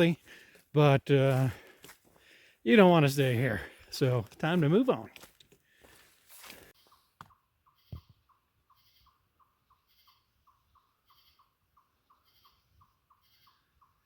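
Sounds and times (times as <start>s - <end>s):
small animal calling: 7.6s - 14.0s.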